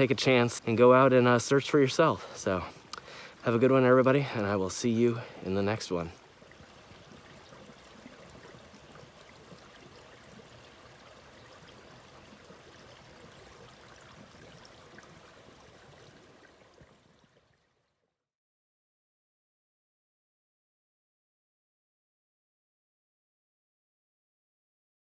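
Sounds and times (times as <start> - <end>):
stream water running: 0.0 - 18.0.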